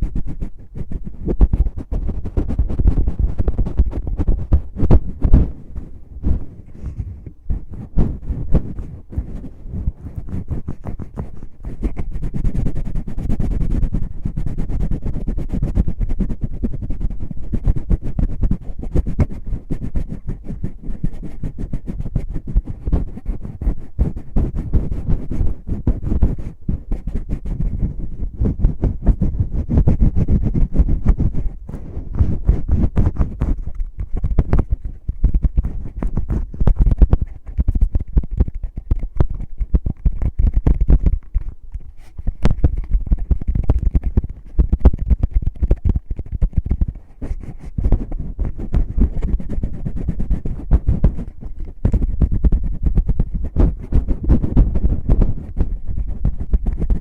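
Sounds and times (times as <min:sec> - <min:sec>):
low muffled thumps: 0:00.0 - 0:11.2
fingers scratching on microphone: 0:00.0 - 0:57.0.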